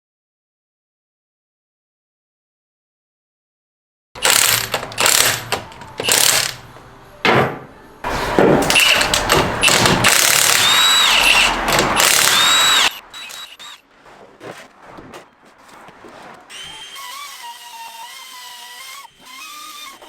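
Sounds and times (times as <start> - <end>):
power tool spinning: 4.2 - 6.6, 8.6 - 13.8, 16.5 - 20.0.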